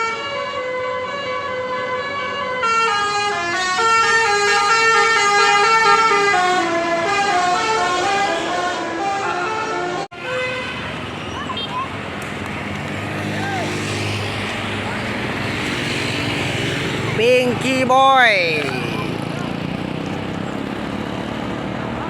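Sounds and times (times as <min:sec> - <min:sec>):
musical truck horn playing tune: 0:00.0 - 0:10.9
road noise: 0:00.0 - 0:22.0.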